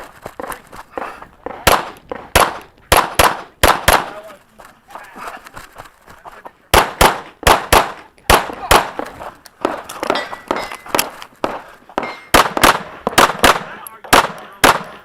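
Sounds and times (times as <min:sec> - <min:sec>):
pistol shots: 0:01.6 - 0:04.2, 0:06.7 - 0:15.0.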